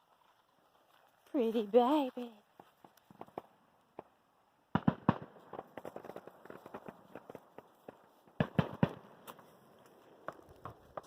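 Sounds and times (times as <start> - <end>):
firecrackers popping: 4.8 - 11.0.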